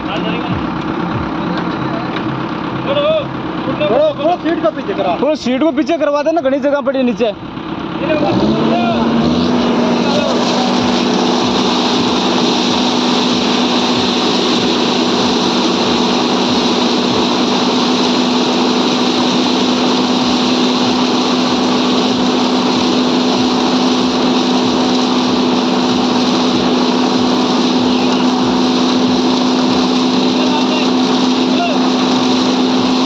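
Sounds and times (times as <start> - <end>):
small engine running: 7.2 - 33.0.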